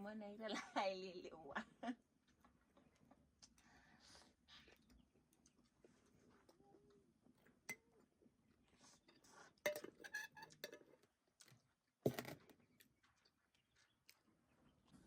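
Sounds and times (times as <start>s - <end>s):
dishes and pots clinking: 9.7s - 10.9s.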